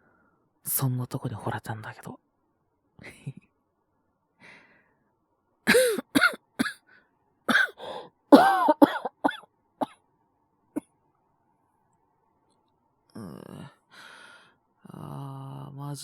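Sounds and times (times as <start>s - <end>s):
faint breath: 0.0s - 0.5s, 4.4s - 5.1s, 7.8s - 8.2s, 13.9s - 14.6s
man coughing: 5.7s - 6.8s, 7.5s - 9.4s.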